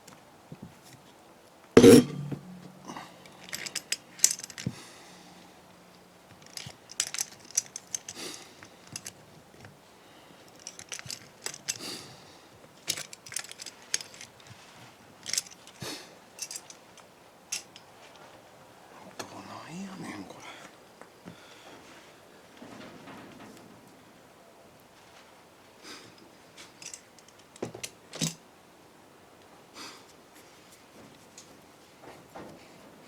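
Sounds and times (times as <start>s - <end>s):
loud ringing metal clank: 1.8s - 3.0s
metal tools clinking: 1.8s - 4.7s, 6.4s - 9.2s, 10.5s - 11.8s.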